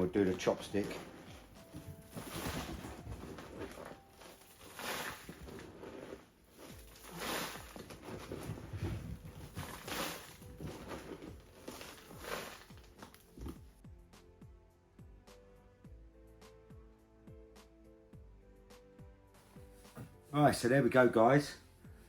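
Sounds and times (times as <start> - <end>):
gritty soil rustling and scraping: 0.0 - 13.3.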